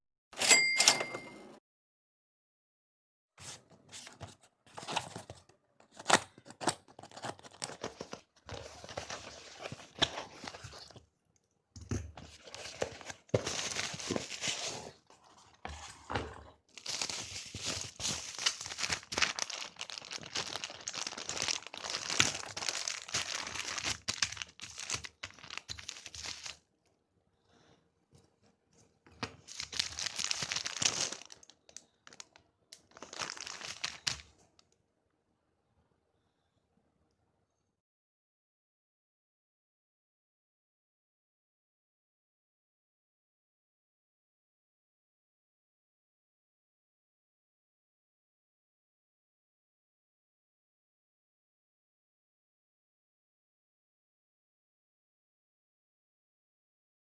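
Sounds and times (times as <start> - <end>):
packaging torn and crinkled: 16.7 - 26.6, 29.3 - 34.3.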